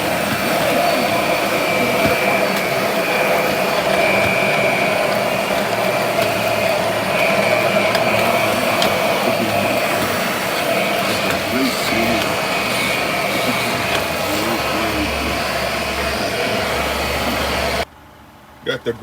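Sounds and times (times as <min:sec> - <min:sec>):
vacuum cleaner running: 0:00.0 - 0:17.9.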